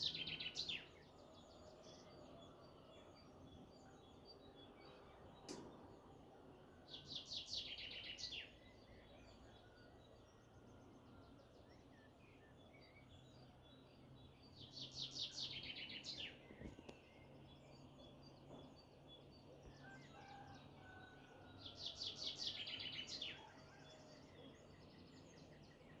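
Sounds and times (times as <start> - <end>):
songbird singing: 0.0 - 26.0.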